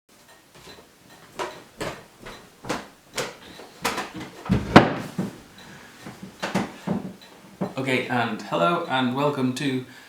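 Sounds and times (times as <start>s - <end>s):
knocks: 1.4s - 5.4s, 6.1s - 7.8s
heavy thump: 2.6s - 5.4s.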